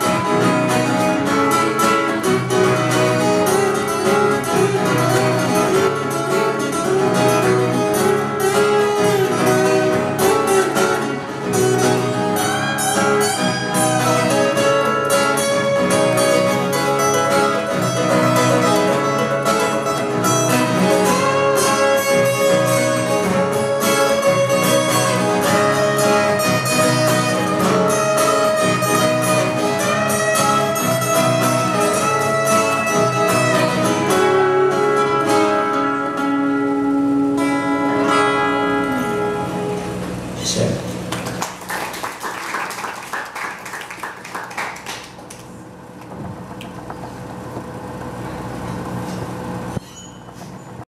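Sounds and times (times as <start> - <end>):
sustained guitar melody: 0.0 - 41.2
guitar plucked notes: 0.0 - 41.4.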